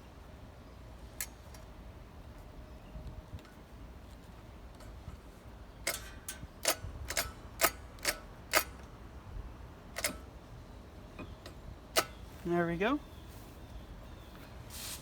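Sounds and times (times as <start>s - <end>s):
hand tool clicking: 5.8s - 8.8s.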